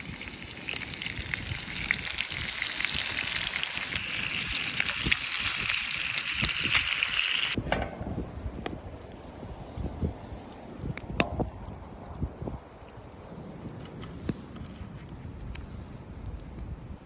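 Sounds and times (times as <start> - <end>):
food sizzling in a pan: 0.0 - 7.6.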